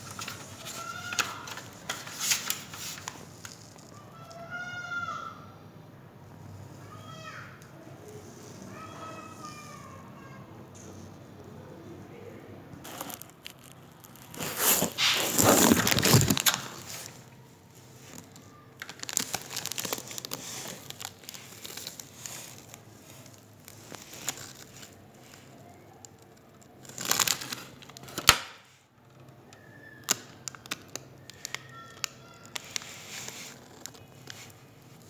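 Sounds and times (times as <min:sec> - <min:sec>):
rustling and crinkling: 0:00.0 - 0:04.5, 0:12.8 - 0:35.0
small clicks: 0:29.1 - 0:34.6.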